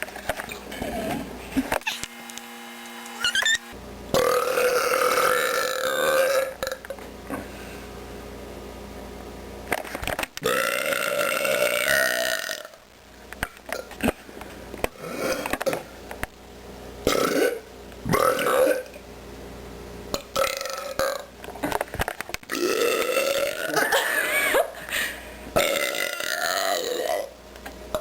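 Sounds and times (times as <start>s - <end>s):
person belching: 4.1s - 6.9s, 10.4s - 12.8s, 17.1s - 19.0s, 20.2s - 21.3s, 22.5s - 24.2s, 25.6s - 27.3s.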